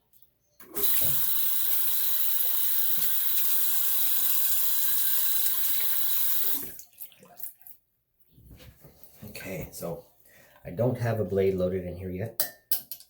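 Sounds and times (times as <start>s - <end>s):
tap water running into sink: 0.7s - 7.6s.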